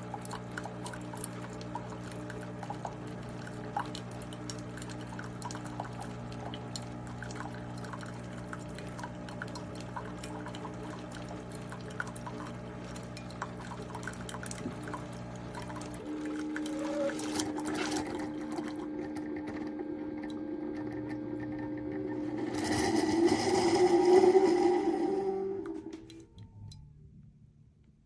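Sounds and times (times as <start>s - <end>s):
liquid trickling and dripping: 0.0s - 21.6s
coffee maker humming: 0.0s - 26.8s.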